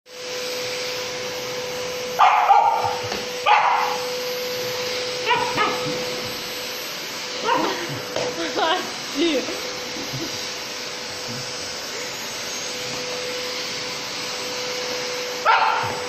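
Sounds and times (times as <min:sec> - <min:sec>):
vacuum cleaner hum and hiss: 0:00.1 - 0:16.0
dog barking: 0:02.2 - 0:04.1, 0:05.2 - 0:05.9, 0:15.4 - 0:16.0.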